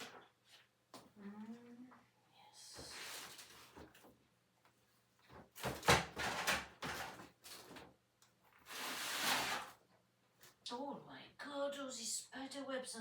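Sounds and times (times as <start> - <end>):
household objects knocking and clattering: 5.3 - 7.8.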